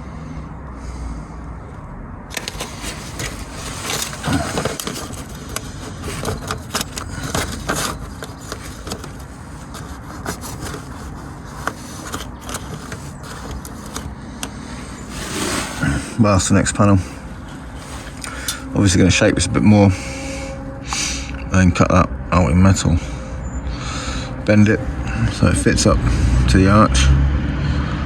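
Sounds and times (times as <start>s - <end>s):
steady low rumble: 0.0s - 26.6s
paper crackling and scraping: 2.3s - 18.7s.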